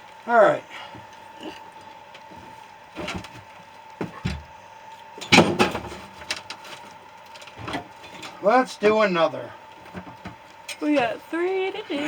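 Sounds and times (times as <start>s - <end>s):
tools and parts clattering: 5.2s - 8.4s.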